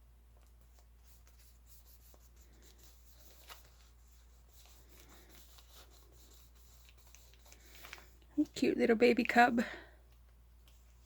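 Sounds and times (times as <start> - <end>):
paper rustling and tapping: 0.4 - 8.6.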